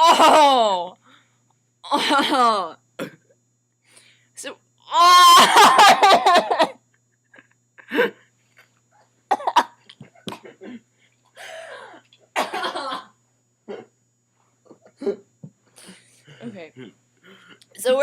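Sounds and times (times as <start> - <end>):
person burping: 3.0 - 3.3.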